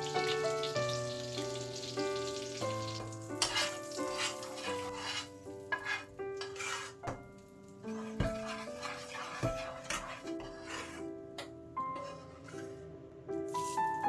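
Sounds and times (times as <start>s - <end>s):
food sizzling: 0.0s - 9.9s, 13.5s - 14.0s
utensil stirring in a pan: 0.0s - 11.2s, 11.8s - 12.8s
soft instrumental music: 0.0s - 14.0s.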